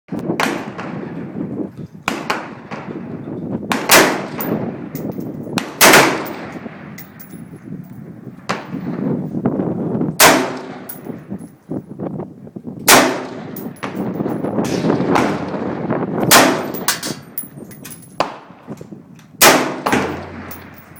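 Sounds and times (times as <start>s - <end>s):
rifle shots: 3.7s - 4.7s, 5.6s - 6.7s, 10.2s - 11.0s, 12.9s - 17.2s, 19.4s - 20.9s.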